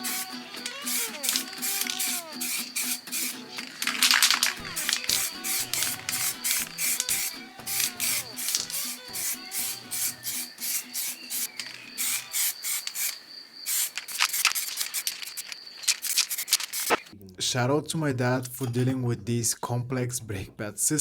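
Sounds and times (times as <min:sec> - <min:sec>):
background music: 0:00.0 - 0:12.3
hand scrubbing with abrasive: 0:00.0 - 0:17.1.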